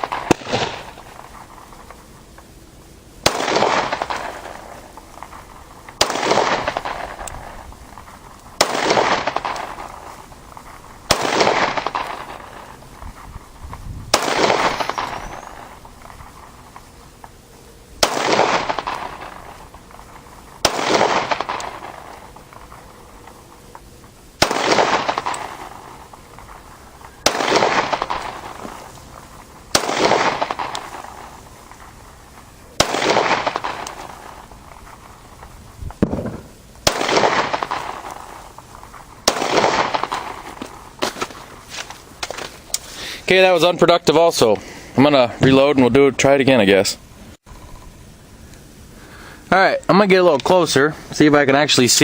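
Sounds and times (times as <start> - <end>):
distant pistol shots with echo: 0.0 - 1.7, 3.2 - 5.4, 6.0 - 7.6, 8.6 - 10.1, 11.1 - 12.8, 14.1 - 15.8, 18.0 - 23.3, 24.4 - 28.9, 29.7 - 31.4, 32.8 - 34.5, 36.0 - 38.3, 39.2 - 40.5.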